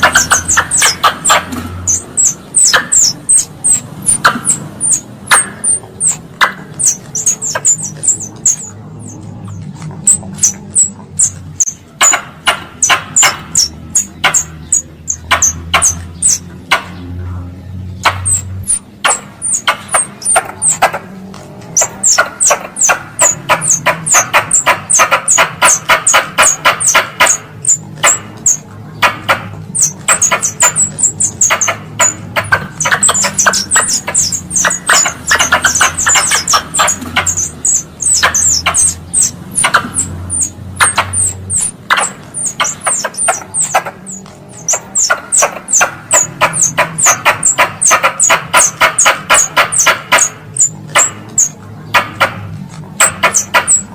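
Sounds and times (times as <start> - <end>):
squirrel call chattering: 0.0 - 17.2, 17.9 - 53.9.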